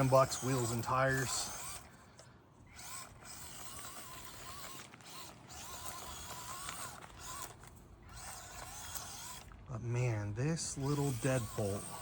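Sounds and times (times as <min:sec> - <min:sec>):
small electric motor whining: 0:00.0 - 0:09.7, 0:10.6 - 0:12.0.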